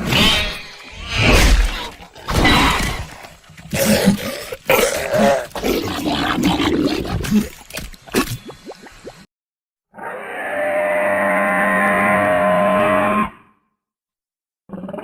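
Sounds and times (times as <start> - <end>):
creature roaring calls: 3.7 - 7.0, 9.9 - 13.6.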